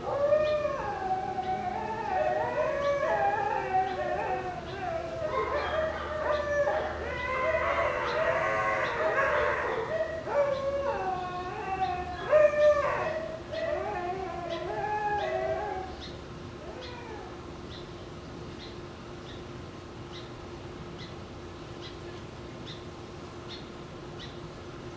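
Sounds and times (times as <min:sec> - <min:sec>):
puppies screaming and yowling: 0:00.0 - 0:17.5.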